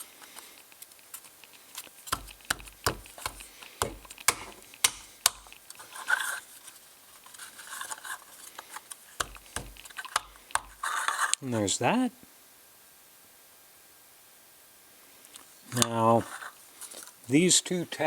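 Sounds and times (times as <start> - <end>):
wooden parts clicking together: 0.0 - 6.4, 7.2 - 11.4, 15.7 - 16.0
wood scraping and rubbing: 0.0 - 11.7, 15.8 - 17.2.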